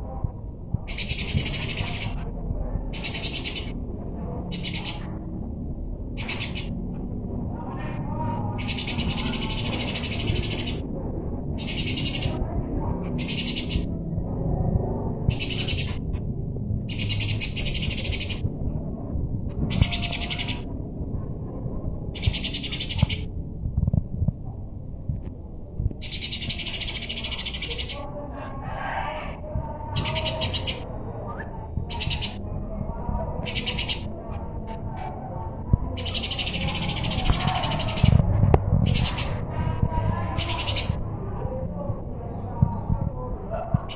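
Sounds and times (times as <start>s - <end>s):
low background rumble: 0.0s - 43.9s
sparrows chattering: 0.9s - 2.3s, 2.9s - 3.9s, 4.5s - 5.2s, 6.2s - 6.8s, 8.5s - 10.9s, 11.6s - 12.4s, 13.0s - 13.9s, 15.2s - 16.1s, 16.8s - 18.4s, 19.7s - 20.7s, 22.2s - 23.3s, 26.0s - 28.0s, 29.9s - 30.9s, 31.9s - 32.4s, 33.4s - 34.4s, 36.0s - 38.2s, 40.2s - 41.0s.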